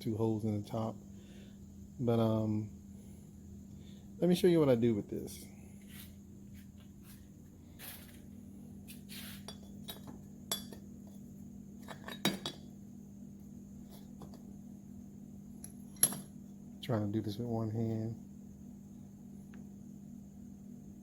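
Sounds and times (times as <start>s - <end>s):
steady low hum: 0.0s - 21.0s
metal clinks and knocks: 15.6s - 16.4s.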